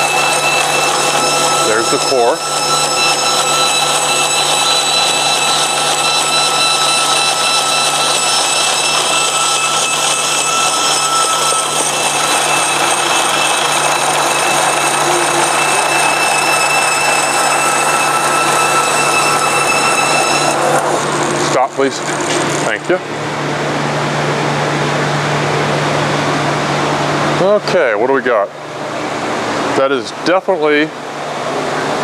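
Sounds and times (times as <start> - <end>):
bandsaw cutting foam tape: 0.0 - 22.8.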